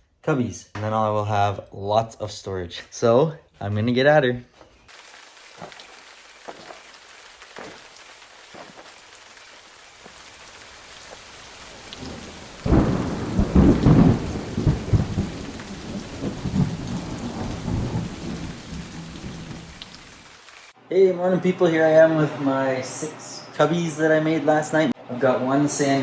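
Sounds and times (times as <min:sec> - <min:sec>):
steady rain hiss: 0:04.9 - 0:20.8
thunder rumbling: 0:10.9 - 0:20.2.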